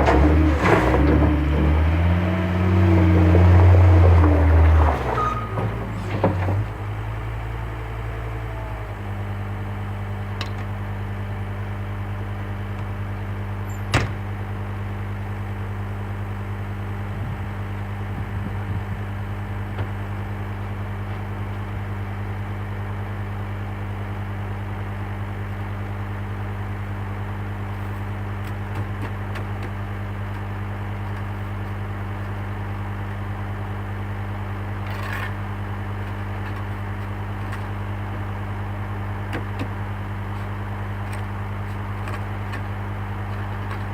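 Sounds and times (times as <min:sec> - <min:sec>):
engine idling: 0:00.0 - 0:43.9.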